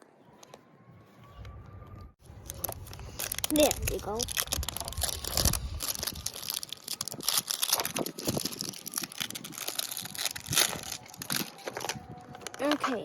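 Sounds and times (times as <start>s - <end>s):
plastic wrapping crinkling and tearing: 2.2s - 13.0s.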